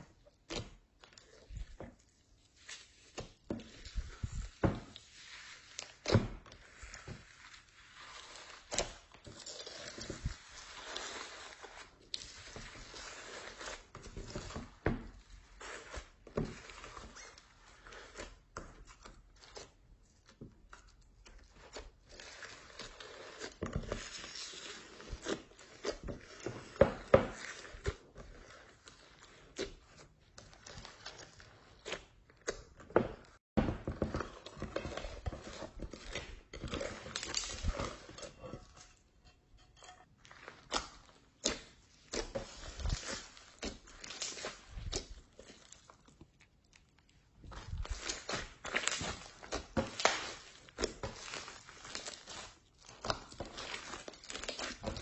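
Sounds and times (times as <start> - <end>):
slime squished by hand: 40.2 - 55.0.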